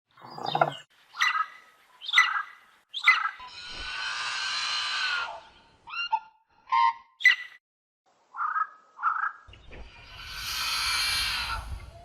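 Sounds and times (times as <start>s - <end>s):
shrill bird-like chirps: 0.2s - 7.6s
harsh rasping creature call: 3.4s - 5.6s, 10.1s - 12.0s.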